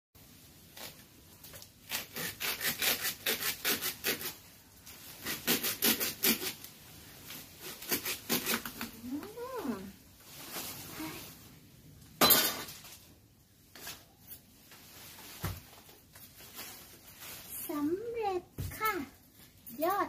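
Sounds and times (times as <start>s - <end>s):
hand saw cutting wood: 1.9s - 4.4s, 5.2s - 6.6s.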